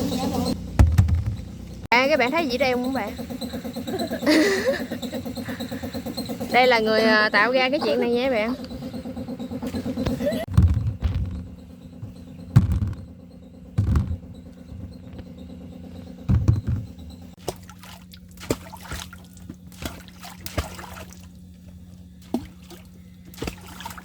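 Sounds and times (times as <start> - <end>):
steady low hum: 0.0 - 24.0
dull low thumps: 0.5 - 1.9, 8.0 - 17.4
water trickling and splashing: 17.4 - 24.0.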